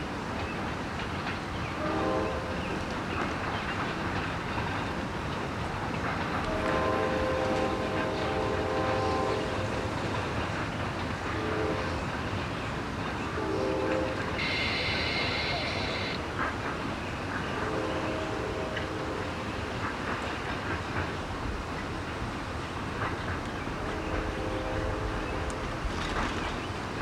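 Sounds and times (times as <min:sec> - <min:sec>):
moving train rumble: 0:00.0 - 0:27.0
locomotive air horn: 0:01.8 - 0:02.6, 0:06.5 - 0:09.8, 0:11.4 - 0:12.0, 0:13.4 - 0:16.2, 0:17.6 - 0:19.4, 0:23.8 - 0:25.8.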